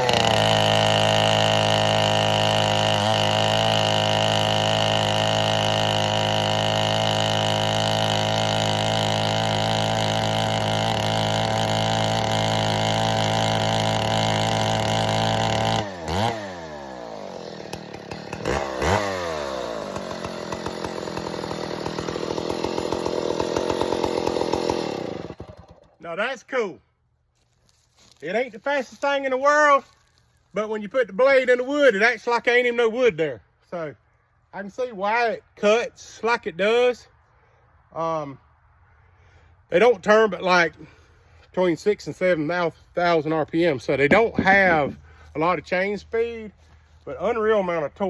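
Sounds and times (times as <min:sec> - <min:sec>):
chainsaw cutting wood: 0:00.0 - 0:26.3, 0:39.8 - 0:48.0.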